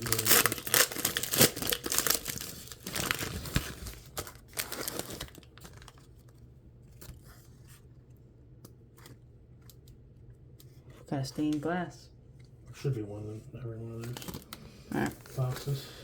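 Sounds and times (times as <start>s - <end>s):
foil wrapper crinkling and tearing: 0.0s - 6.4s, 14.0s - 14.6s.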